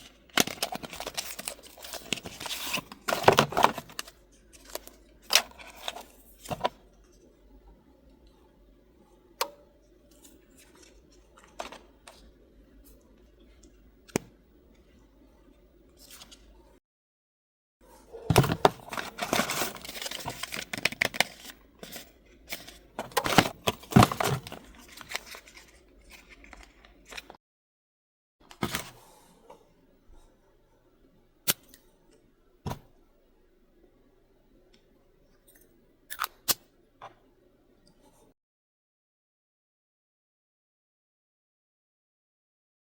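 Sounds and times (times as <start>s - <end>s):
packaging crinkling and tearing: 0.3s - 6.0s, 18.8s - 27.4s.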